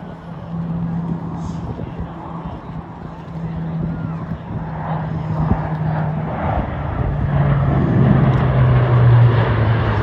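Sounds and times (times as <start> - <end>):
propeller aircraft flying past: 0.0 - 10.0.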